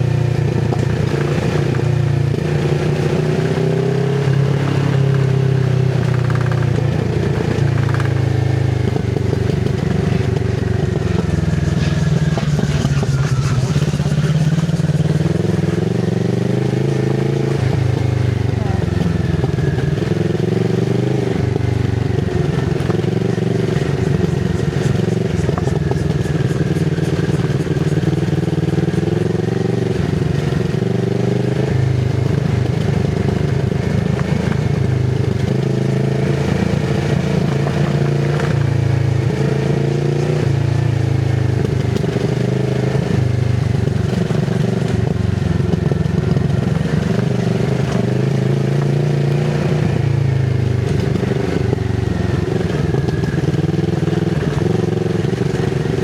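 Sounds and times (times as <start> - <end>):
motorcycle engine at low revs: 0.0 - 56.0.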